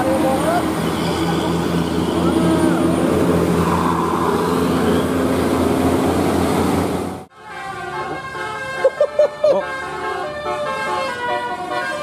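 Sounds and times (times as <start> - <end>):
bus engine droning: 0.0 - 7.3
steady pitched tones: 0.0 - 7.3.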